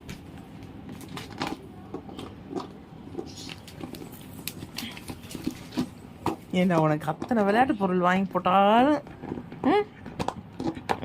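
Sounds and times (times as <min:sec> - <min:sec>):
dog chewing plastic bottle: 0:01.0 - 0:06.4.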